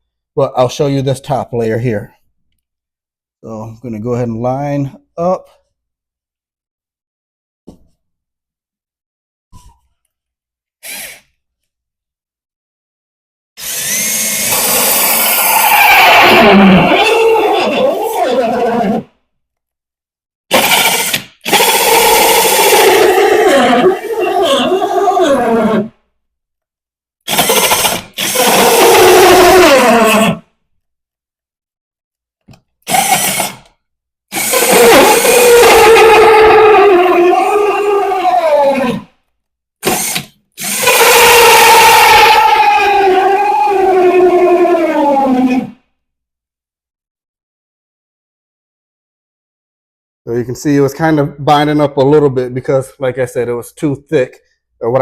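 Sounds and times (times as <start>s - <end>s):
drill with hole saw cutting wood: 10.8s - 11.2s, 13.6s - 18.4s, 20.5s - 24.2s, 27.3s - 30.2s, 32.8s - 33.7s, 34.3s - 36.2s, 39.8s - 43.5s.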